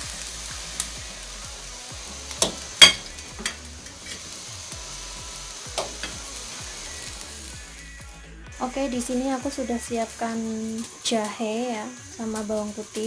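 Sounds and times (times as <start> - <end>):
water boiling in a pot: 0.0 - 7.8, 9.3 - 13.0
utensil clicking against pot: 2.4 - 4.4, 5.8 - 6.6.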